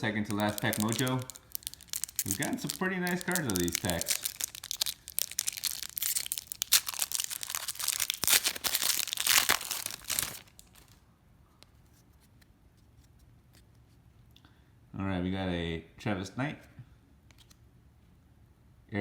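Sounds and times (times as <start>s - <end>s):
wrapper tearing and crinkling: 0.0s - 11.0s.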